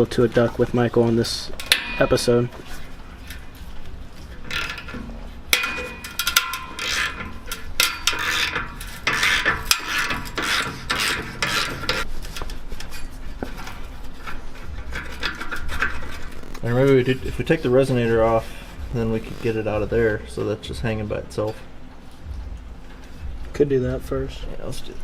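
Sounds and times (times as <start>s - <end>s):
metal scraping and clinking: 0.0s - 23.3s
hand ratchet clicking: 4.5s - 12.1s.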